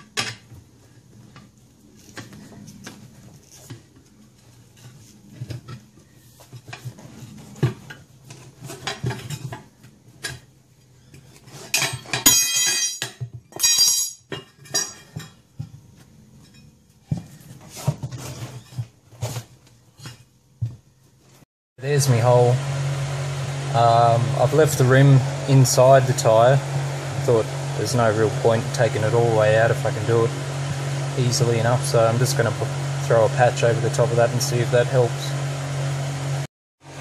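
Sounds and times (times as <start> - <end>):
tools clinking on metal rim: 11.7 - 15.4.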